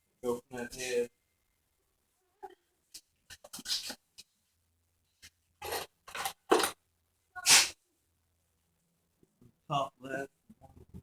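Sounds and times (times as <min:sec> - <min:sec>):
person sneezing: 0:07.4 - 0:07.8.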